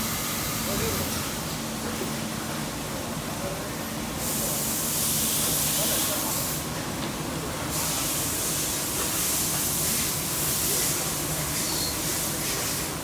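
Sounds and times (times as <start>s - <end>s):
coolant spraying hiss: 7.7s - 13.0s.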